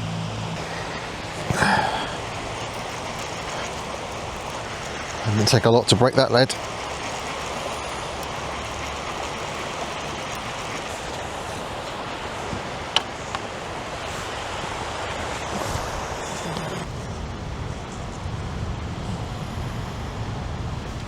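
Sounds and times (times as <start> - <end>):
low rumble: 0.0 - 5.2
sea surf on beach: 0.0 - 21.0.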